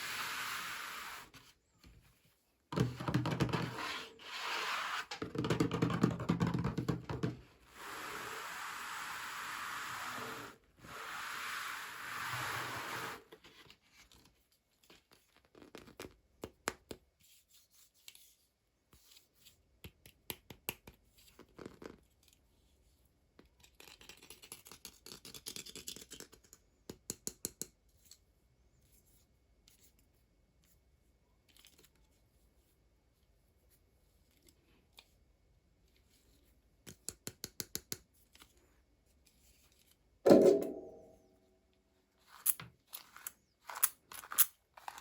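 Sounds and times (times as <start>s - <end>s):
plastic and cardboard clicks and scraping: 42.6s - 45.0s.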